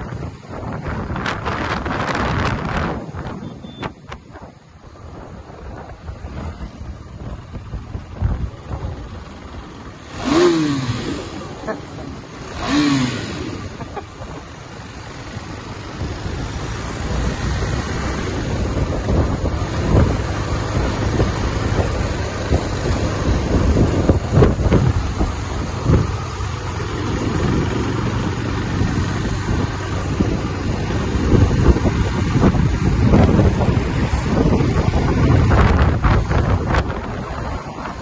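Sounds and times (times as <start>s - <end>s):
moving vehicle road noise: 0.0s - 38.0s
wind buffeting microphone: 0.0s - 38.0s.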